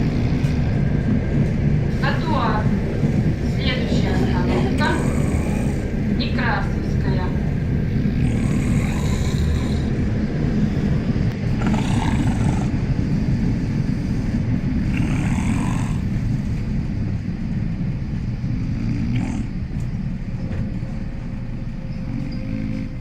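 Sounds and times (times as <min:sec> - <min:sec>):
train low rumble: 0:00.0 - 0:23.0
person snoring: 0:04.7 - 0:05.9, 0:08.1 - 0:12.9, 0:14.0 - 0:16.2, 0:18.7 - 0:19.6, 0:22.1 - 0:23.0.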